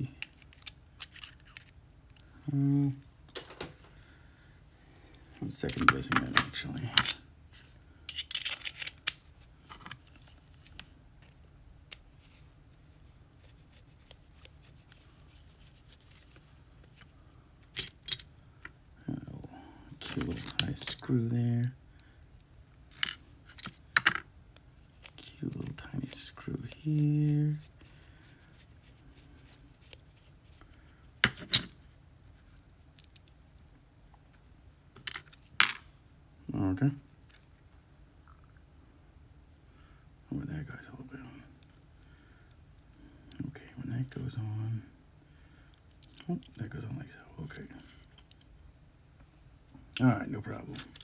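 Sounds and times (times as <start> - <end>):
small metal clicks and scrapes: 0.2 - 2.3, 5.6 - 12.4.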